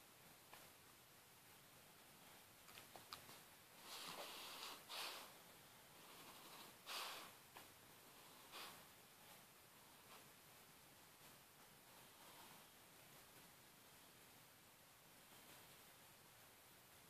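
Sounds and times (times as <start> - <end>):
puppy snoring: 3.8 - 7.4, 8.0 - 8.9.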